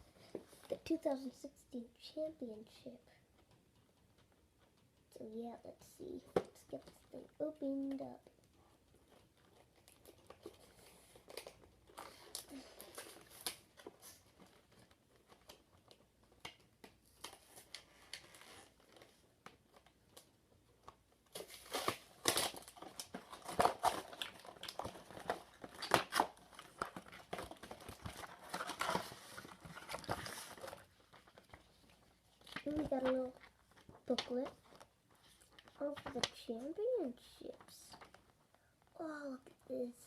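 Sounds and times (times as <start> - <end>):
packaging crinkling and tearing: 9.1 - 36.5.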